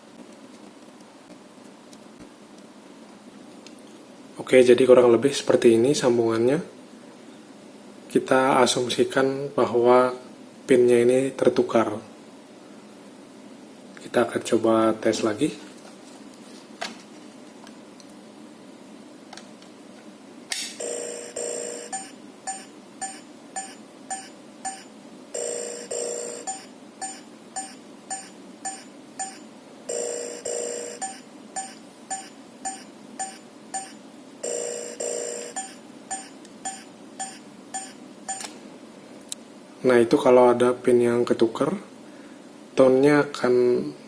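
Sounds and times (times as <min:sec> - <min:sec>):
short beeps: 0:21.9 - 0:24.9.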